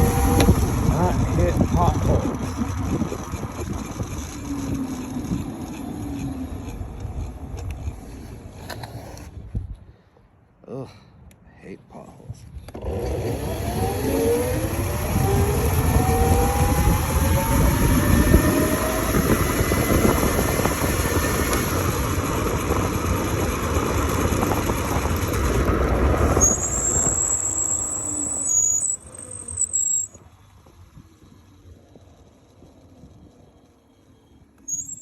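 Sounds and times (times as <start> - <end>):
high whine: 0.0 - 8.0, 12.8 - 35.0
electric motor whine: 0.0 - 9.0, 12.7 - 35.0
road rumble: 0.0 - 11.7, 12.4 - 35.0
wind: 0.0 - 35.0.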